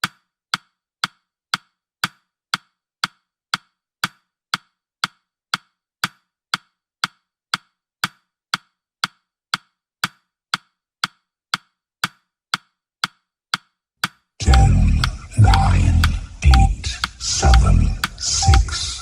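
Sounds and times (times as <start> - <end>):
timer ticking clicks: 14.0 - 19.0
music with heavy bass: 14.4 - 19.0.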